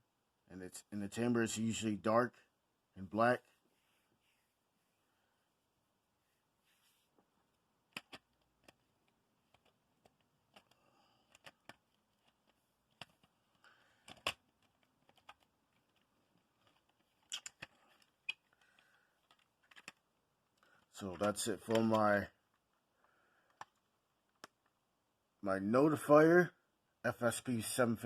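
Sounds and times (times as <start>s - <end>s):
plastic clicks and taps: 7.9s - 8.8s.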